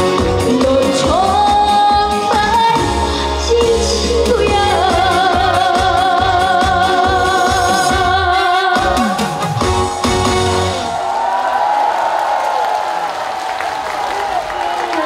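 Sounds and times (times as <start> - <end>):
band playing: 0.0 - 11.2
woman singing with vibrato: 0.3 - 9.7.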